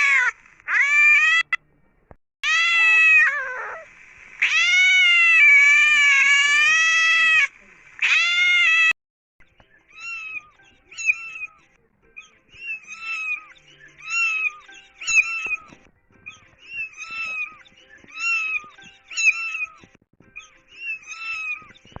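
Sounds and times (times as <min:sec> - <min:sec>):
kitten mewing: 0:02.4 - 0:09.0.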